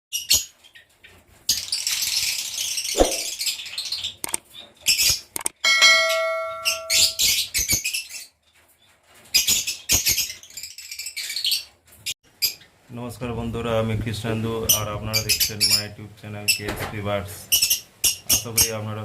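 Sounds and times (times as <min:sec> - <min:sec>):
lovebirds chirping and squawking: 0:00.1 - 0:12.8, 0:14.6 - 0:16.6, 0:17.4 - 0:18.8
metallic bell ring: 0:05.6 - 0:07.4.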